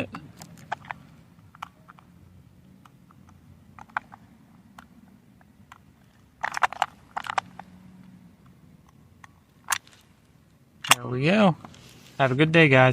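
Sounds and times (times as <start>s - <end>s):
combination lock wheels clicking: 2.8s - 7.8s.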